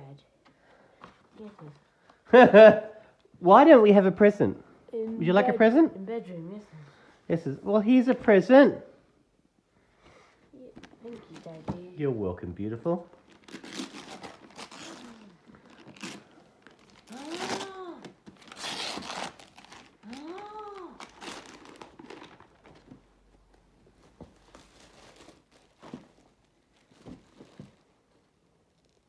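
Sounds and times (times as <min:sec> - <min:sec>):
wrapping paper tearing and crinkling: 0:13.1 - 0:23.1, 0:24.4 - 0:27.6.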